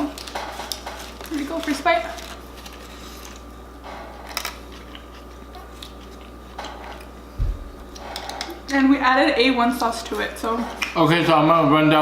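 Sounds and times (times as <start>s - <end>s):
quiet chewing: 4.3s - 7.1s.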